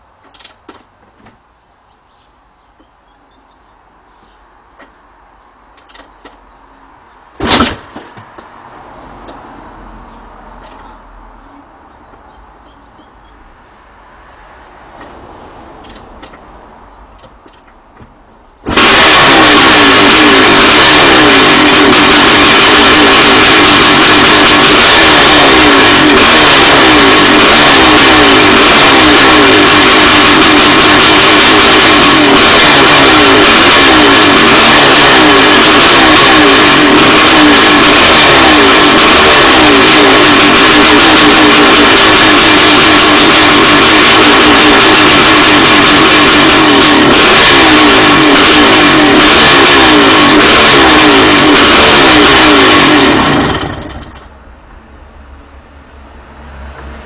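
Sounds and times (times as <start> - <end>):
motorcycle engine revving loudly: 18.5 - 54.3.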